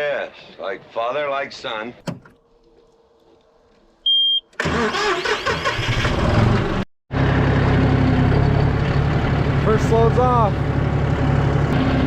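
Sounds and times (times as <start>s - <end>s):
short high beep: 4.1s - 4.5s
tractor engine running: 4.6s - 12.0s.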